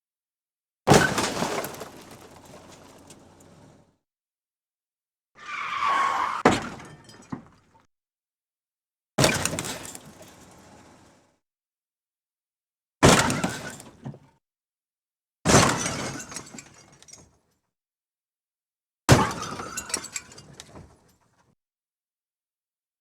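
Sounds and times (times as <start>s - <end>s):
car crash with shattering glass: 0.9s - 3.2s, 19.1s - 20.6s.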